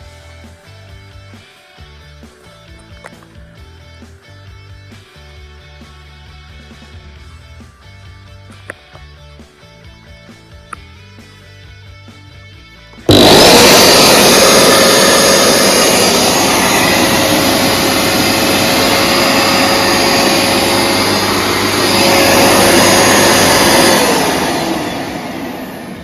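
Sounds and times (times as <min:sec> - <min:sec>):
carpet washer motor whining: 0:13.1 - 0:26.0.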